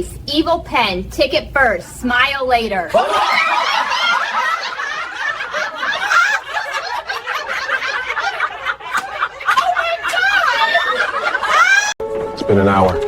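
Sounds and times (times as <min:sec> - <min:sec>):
people laughing: 0:02.9 - 0:12.0.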